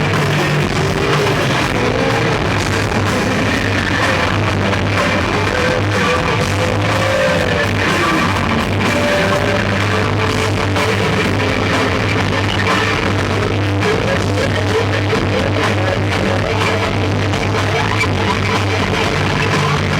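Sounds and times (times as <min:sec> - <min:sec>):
bass guitar: 0:00.0 - 0:19.9
distorted electric guitars: 0:00.0 - 0:19.9
drums: 0:00.0 - 0:19.9.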